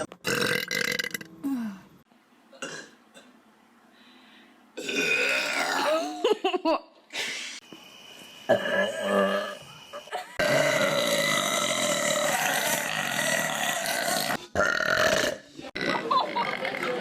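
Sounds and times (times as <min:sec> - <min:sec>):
people burping loudly: 0:00.2 - 0:01.6, 0:04.8 - 0:06.2, 0:08.5 - 0:09.6, 0:10.4 - 0:17.0.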